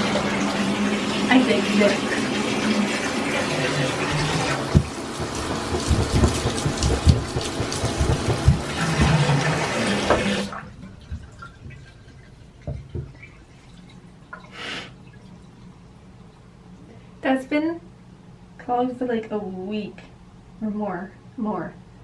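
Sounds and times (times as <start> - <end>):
shower running: 0.0 - 16.4
drain gurgling thumps: 0.0 - 16.5
small knocks and drips: 4.6 - 16.5.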